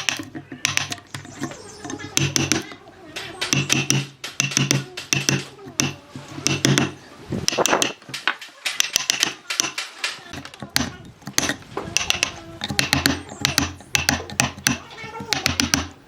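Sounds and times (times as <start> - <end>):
quick irregular taps and clicks: 0.0 - 16.0
voices: 0.0 - 16.0.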